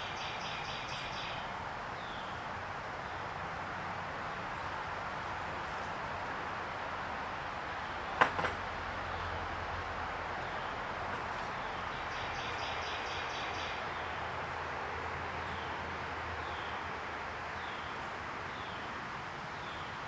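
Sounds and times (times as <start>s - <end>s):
small birds chirping: 0.0s - 3.3s, 10.4s - 14.2s
steady background noise: 0.0s - 20.0s.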